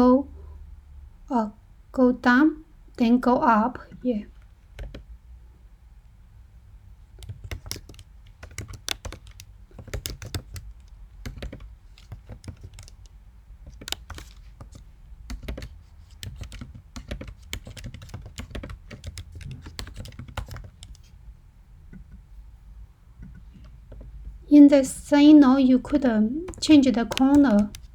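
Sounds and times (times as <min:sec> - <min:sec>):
keyboard typing clicks: 0:04.3 - 0:05.1, 0:07.1 - 0:21.1, 0:25.6 - 0:27.9.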